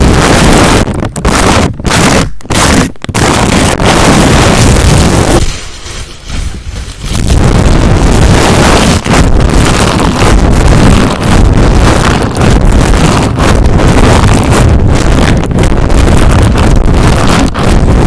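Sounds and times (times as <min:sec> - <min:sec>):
scratching against microphone: 0:00.0 - 0:18.0.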